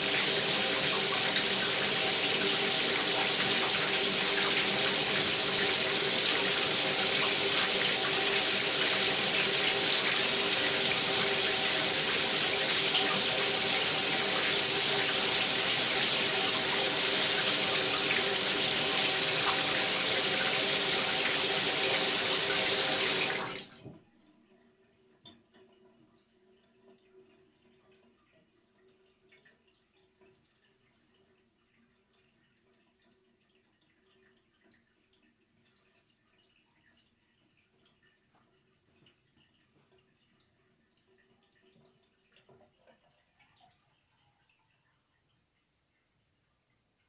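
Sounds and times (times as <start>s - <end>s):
shower running: 0.0s - 23.9s.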